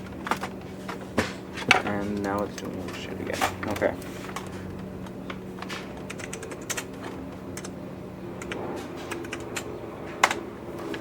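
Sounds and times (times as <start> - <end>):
typing on computer keyboard: 6.0 - 7.7, 8.4 - 10.4.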